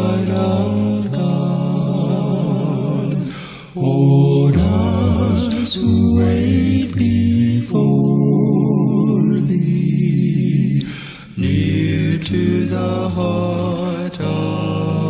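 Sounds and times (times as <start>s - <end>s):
vocal quartet singing in harmony: 0.0s - 15.0s.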